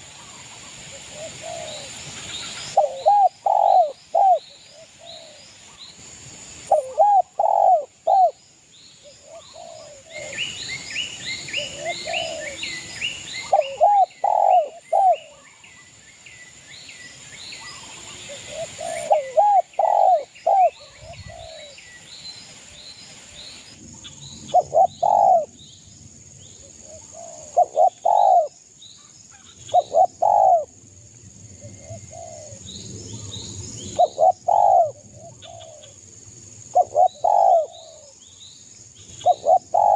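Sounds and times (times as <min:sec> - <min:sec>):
small birds chirping: 0:00.0 - 0:30.8, 0:31.5 - 0:39.9
dove cooing: 0:01.0 - 0:02.0, 0:02.8 - 0:05.4, 0:06.7 - 0:08.4, 0:09.2 - 0:10.5, 0:11.4 - 0:12.8, 0:13.4 - 0:15.4, 0:18.3 - 0:21.7, 0:24.5 - 0:25.5, 0:26.9 - 0:28.6, 0:29.7 - 0:30.7, 0:31.6 - 0:32.7, 0:34.0 - 0:35.9, 0:36.7 - 0:38.1, 0:39.2 - 0:39.9.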